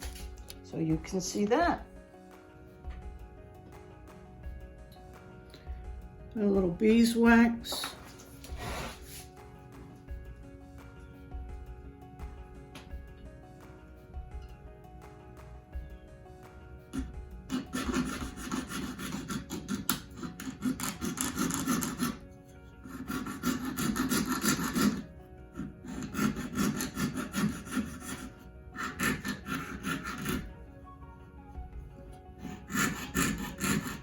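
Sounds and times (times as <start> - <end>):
faint background music: 0.0 - 34.0
saw cutting metal sheet: 17.0 - 22.2, 22.8 - 30.5, 32.4 - 34.0.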